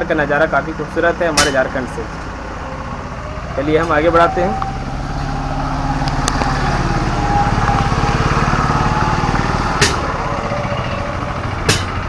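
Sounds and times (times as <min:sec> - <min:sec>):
motorcycle engine idling: 0:09.7 - 0:12.0.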